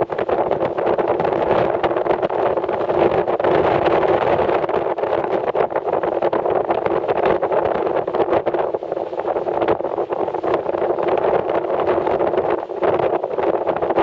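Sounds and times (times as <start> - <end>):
wind and snow rushing: 0.0 - 14.0.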